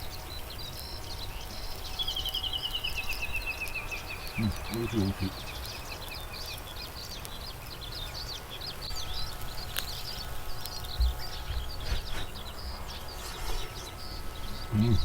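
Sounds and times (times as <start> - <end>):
small birds chirping: 0.0 - 15.0
dull low thumps: 10.9 - 13.1.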